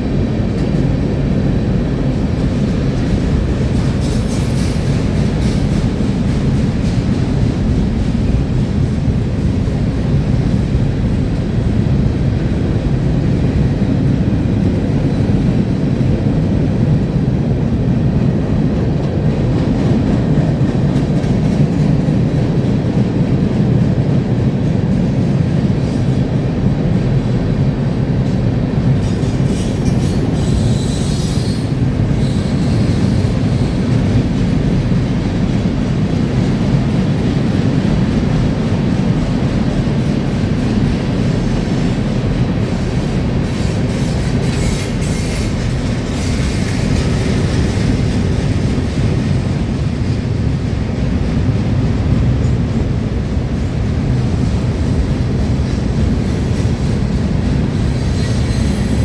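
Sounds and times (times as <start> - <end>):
freight train wheels rumbling: 0.0 - 59.0
high wheel squeal: 29.2 - 33.8.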